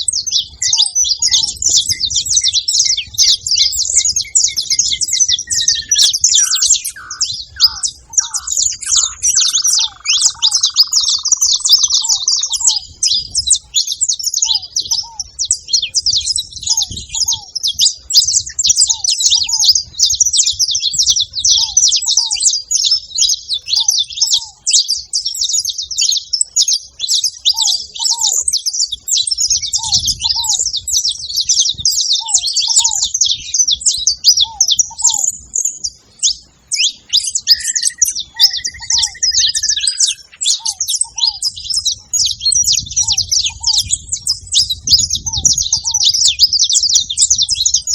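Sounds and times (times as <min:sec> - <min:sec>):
flock of finches chirping: 0:00.0 - 0:47.9
short held whistle: 0:37.5 - 0:40.2.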